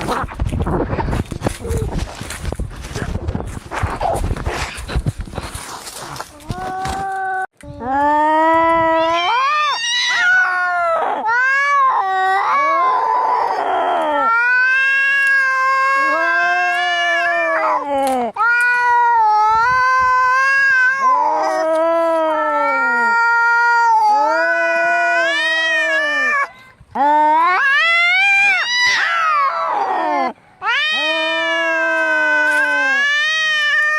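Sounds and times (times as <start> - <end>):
cats yowling: 8.9 - 33.9.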